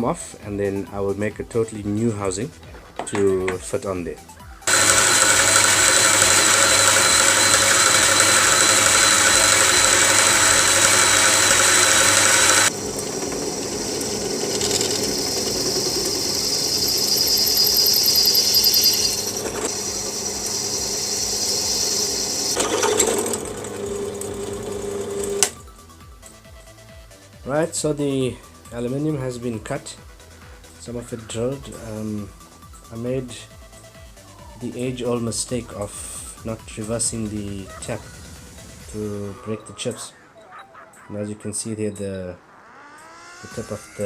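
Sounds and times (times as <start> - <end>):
small motor running steadily: 4.6 - 26.8
machine running unevenly: 4.7 - 25.6.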